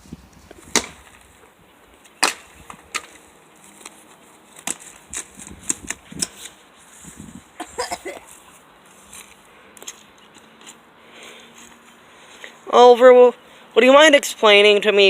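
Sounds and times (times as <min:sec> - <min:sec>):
blows knocking on dead tree wood: 0:00.5 - 0:01.2, 0:02.2 - 0:03.2.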